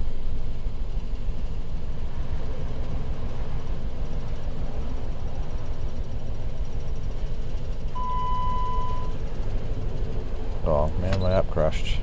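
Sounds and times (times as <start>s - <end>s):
engine running with low rumble: 0.0s - 12.0s
electronic beep: 8.0s - 9.2s.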